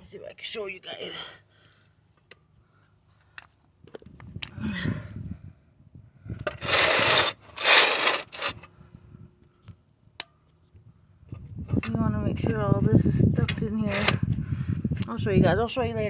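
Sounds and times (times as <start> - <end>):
loud scraping rubs: 6.4 - 8.7.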